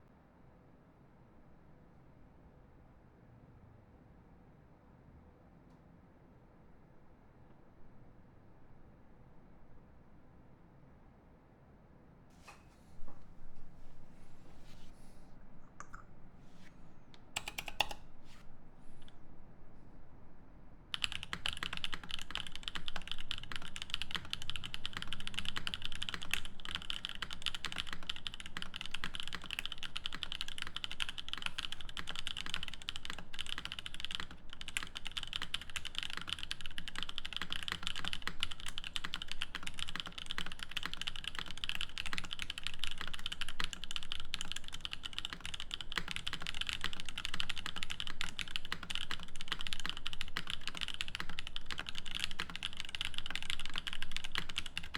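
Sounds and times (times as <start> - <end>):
fast typing on mechanical keyboard: 17.4 - 18.0, 20.9 - 54.9.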